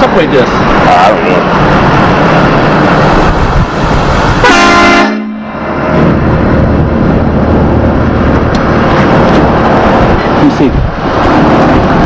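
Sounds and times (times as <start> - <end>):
truck horn blast: 4.4 - 5.6.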